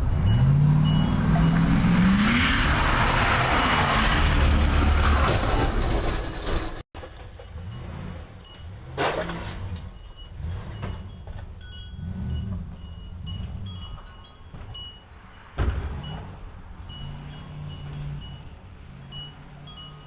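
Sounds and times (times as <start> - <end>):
vehicle traffic rumble: 0.0 - 20.0
light high ringing tones: 9.8 - 20.0.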